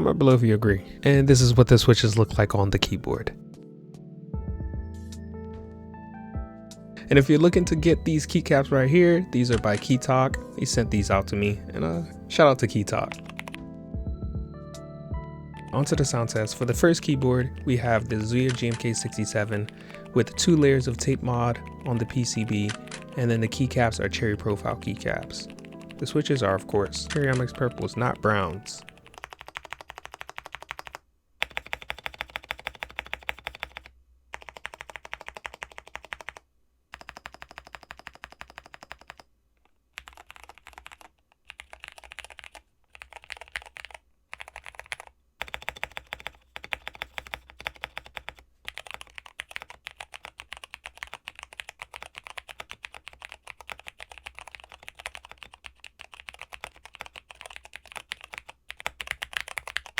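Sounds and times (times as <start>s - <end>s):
typing on mechanical keyboard: 9.3s - 11.6s, 12.6s - 13.6s, 15.6s - 39.3s, 39.9s - 59.9s.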